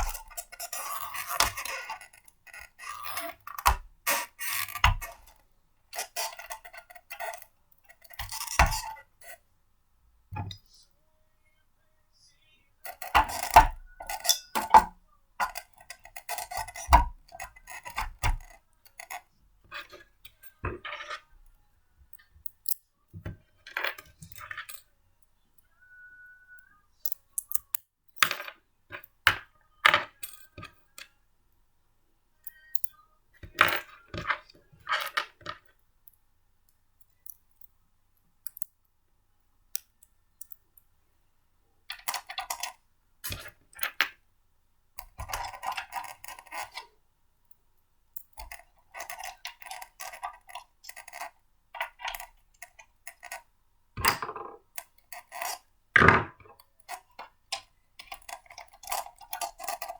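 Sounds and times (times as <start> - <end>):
parts rattling: 0.0 - 9.4, 12.9 - 21.2.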